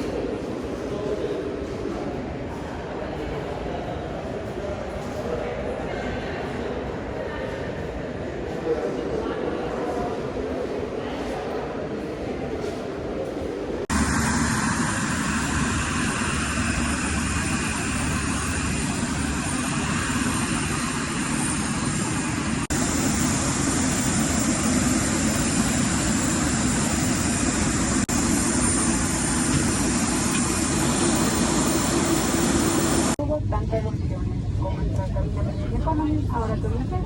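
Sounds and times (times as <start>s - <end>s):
jet engine cabin noise: 12.0s - 37.0s.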